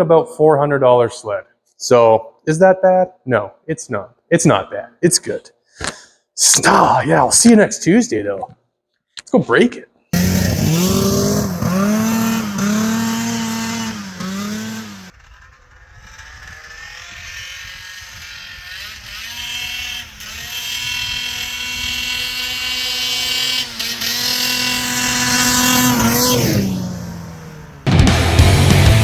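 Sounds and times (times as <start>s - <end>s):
snowmobile engine revving: 10.2s - 29.0s.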